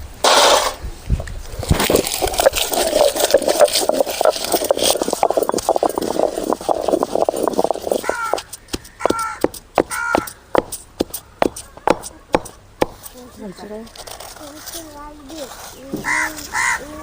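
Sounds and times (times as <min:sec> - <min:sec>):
stone grinder clattering: 0:01.8 - 0:13.0.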